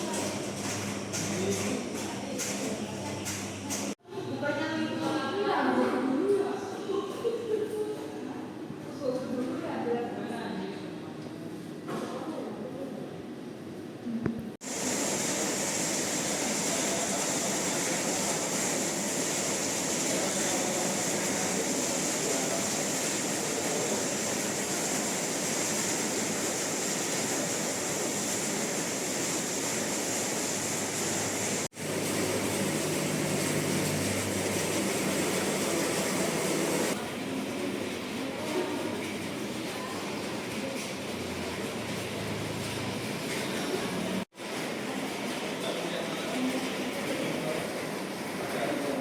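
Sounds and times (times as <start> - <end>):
steady rushing hiss: 14.6 - 37.0.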